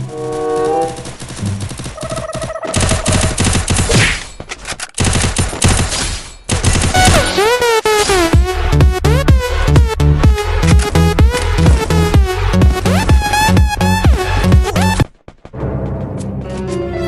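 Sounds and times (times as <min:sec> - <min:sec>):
rapid automatic gunfire: 0:00.8 - 0:03.9, 0:05.0 - 0:07.6.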